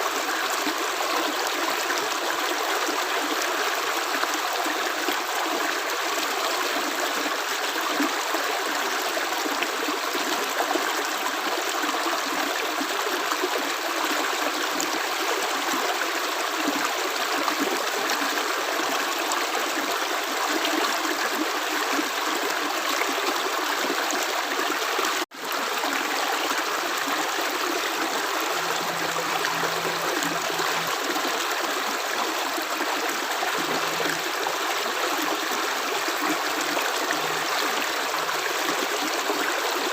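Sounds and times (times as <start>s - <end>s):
running water rushing: 23.8s - 39.9s.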